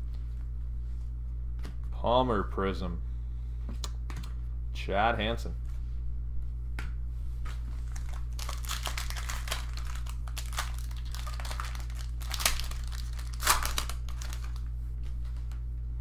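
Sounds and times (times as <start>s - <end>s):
faint low hum: 0.0s - 16.0s
foil wrapper crinkling and tearing: 7.8s - 15.6s.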